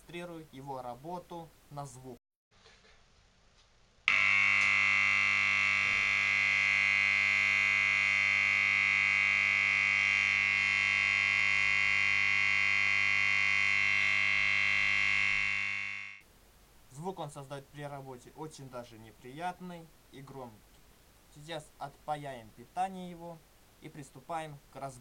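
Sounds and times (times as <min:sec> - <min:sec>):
harsh high-pitched buzz: 0:04.1 - 0:16.2.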